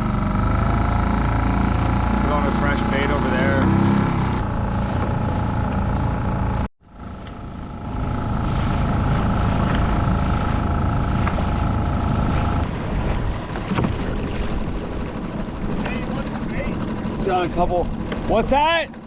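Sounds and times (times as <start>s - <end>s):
steady whine: 0.0s - 13.0s
outboard motor running: 0.0s - 19.0s.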